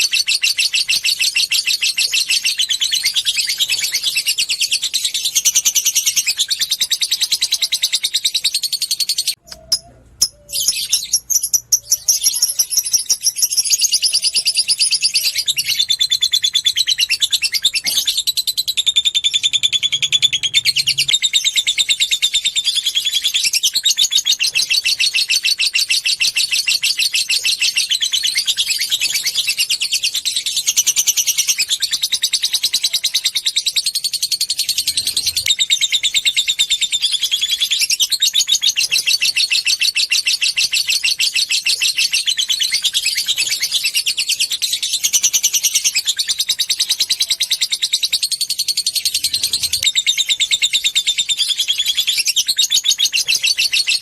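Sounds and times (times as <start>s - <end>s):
lovebird chattering trill: 0.0s - 54.0s.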